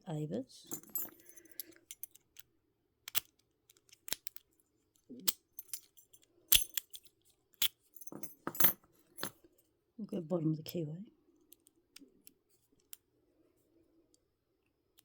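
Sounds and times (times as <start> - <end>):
padlock metallic clicks and clinks: 0.7 - 4.5, 5.2 - 9.4.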